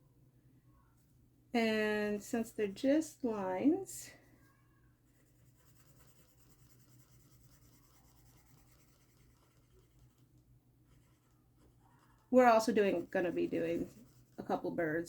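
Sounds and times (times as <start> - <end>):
low steady hum: 0.0 - 15.0
pencil scratching on paper: 5.1 - 10.3, 10.9 - 15.0.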